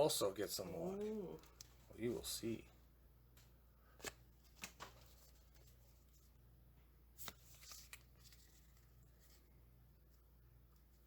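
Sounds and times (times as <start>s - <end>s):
card rustle: 0.6s - 2.5s, 3.9s - 6.4s, 7.2s - 10.2s.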